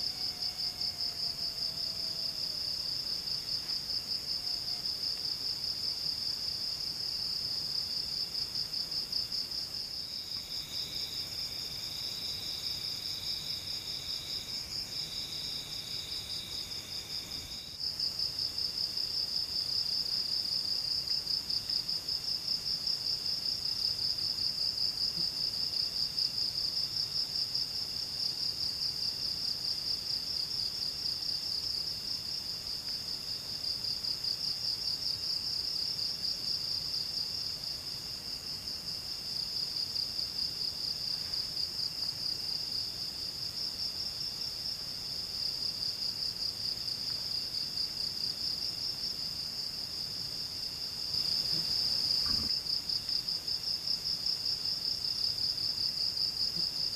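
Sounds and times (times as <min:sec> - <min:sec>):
lower insect trill: 0:00.0 - 0:56.9
high pulsing insect trill: 0:09.3 - 0:20.9.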